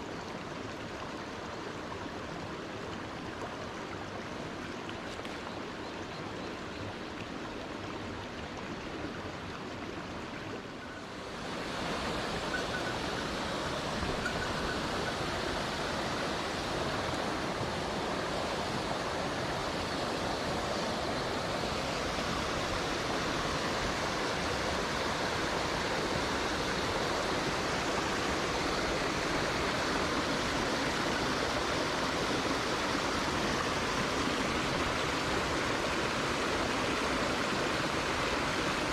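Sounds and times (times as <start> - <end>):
stream rushing over rocks: 0.0 - 38.9.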